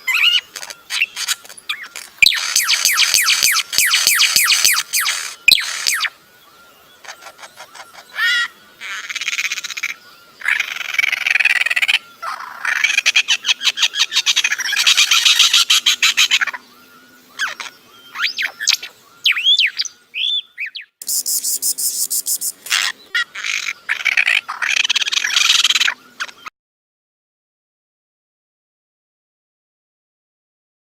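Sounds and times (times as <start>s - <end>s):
bird whistled notes: 0.0s - 26.2s
bird rattling chatter: 21.0s - 22.8s.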